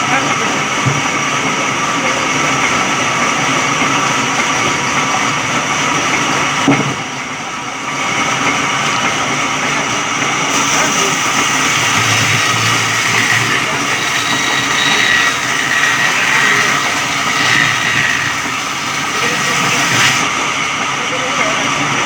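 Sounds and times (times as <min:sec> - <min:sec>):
sawmill machine whine: 0:09.4 - 0:22.0.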